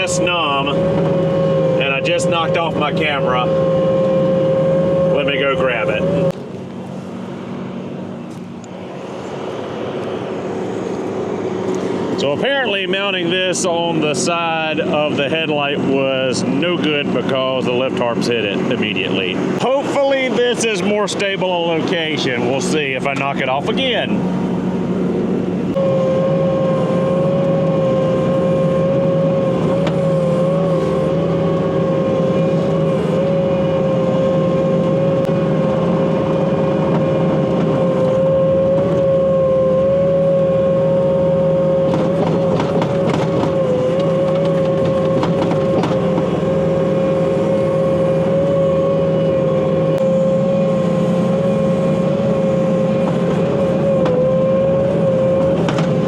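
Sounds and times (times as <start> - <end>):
diesel engine running: 0.0 - 56.0
high hydraulic whine: 0.0 - 56.0
knocks and clicks: 41.8 - 46.4, 55.6 - 56.0.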